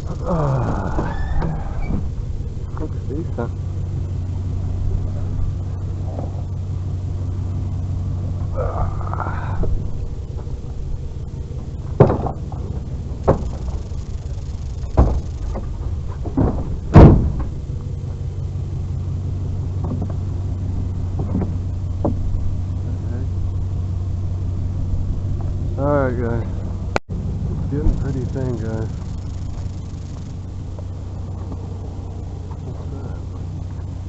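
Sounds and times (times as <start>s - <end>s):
vehicle engine idling: 0.0s - 34.0s
metal bangs and thumps: 11.5s - 17.9s.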